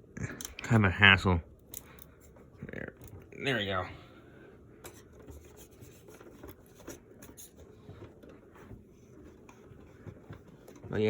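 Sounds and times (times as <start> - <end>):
hands rubbing computer parts: 4.6 - 11.0.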